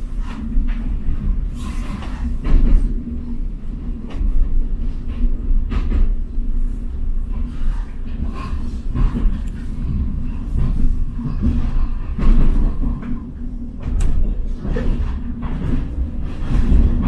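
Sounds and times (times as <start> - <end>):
train rumbling on rails: 0.0 - 17.0
wheels knocking and rattling: 3.9 - 17.0.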